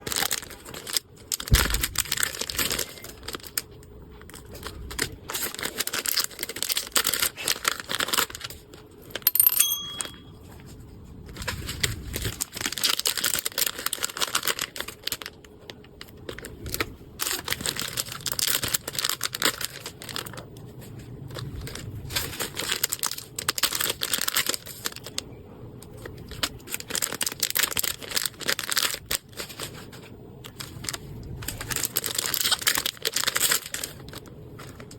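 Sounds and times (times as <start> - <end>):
packaging crinkling and tearing: 0.0 - 9.2, 11.3 - 34.9
brief high ring: 9.4 - 10.4.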